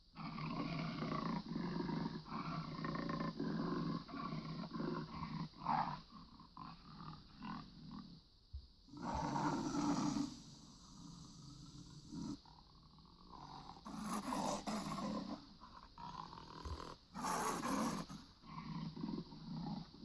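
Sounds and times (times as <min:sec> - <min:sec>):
jaguar roaring and growling: 0:09.0 - 0:12.4, 0:13.4 - 0:15.3, 0:16.0 - 0:19.8.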